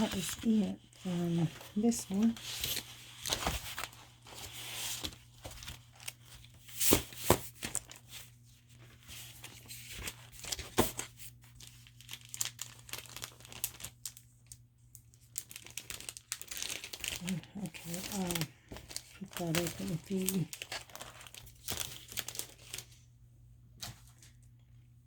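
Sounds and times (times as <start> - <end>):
packaging crinkling and tearing: 0.0 - 23.0.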